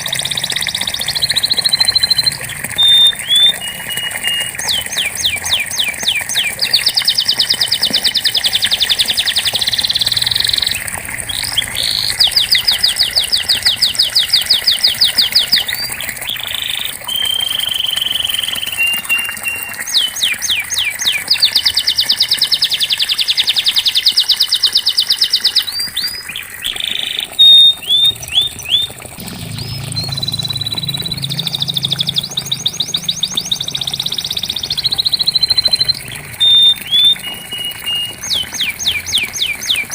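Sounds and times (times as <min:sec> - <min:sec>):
canary singing: 0:00.0 - 0:39.9
low hum: 0:27.8 - 0:37.1.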